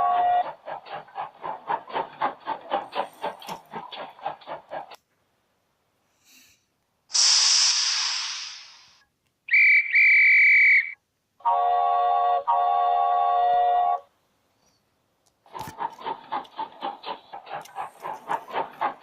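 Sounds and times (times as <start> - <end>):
hiss of steam: 7.1 - 9.0
short high whistle toots: 7.2 - 8.9, 9.5 - 11.0.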